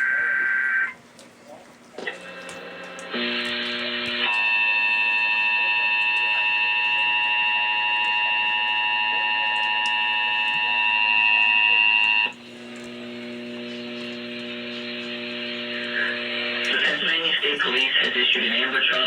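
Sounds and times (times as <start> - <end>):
loud two-tone alarm: 0.0 - 1.0, 3.2 - 12.4
low steady hum: 0.0 - 19.0.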